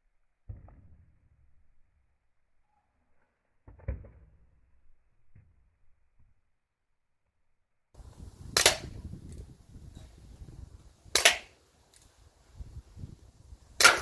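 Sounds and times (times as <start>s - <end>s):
pellet revolver shots: 8.5s - 9.0s, 11.1s - 11.6s, 13.8s - 14.0s.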